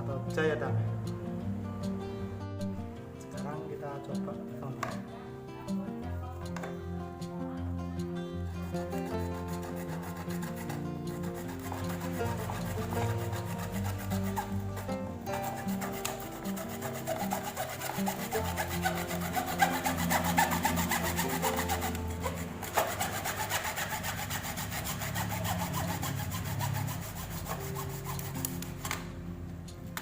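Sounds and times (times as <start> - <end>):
background music: 0.0 - 30.0
hand saw rasping strokes: 8.6 - 28.7.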